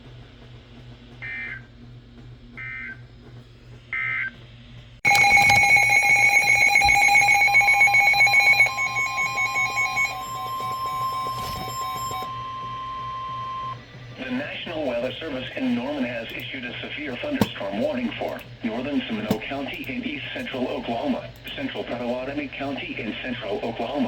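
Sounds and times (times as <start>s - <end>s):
data tone bursts: 5.1s - 13.8s
overlapping electronic alert tones: 5.1s - 13.8s.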